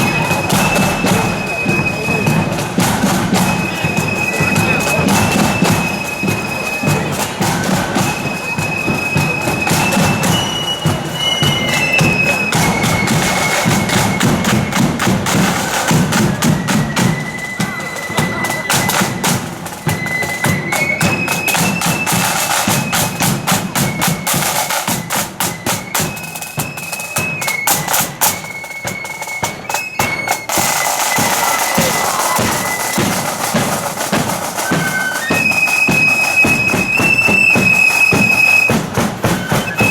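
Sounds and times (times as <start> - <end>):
flutes playing melody: 0.0 - 39.9
snare and bass drums: 0.0 - 39.9.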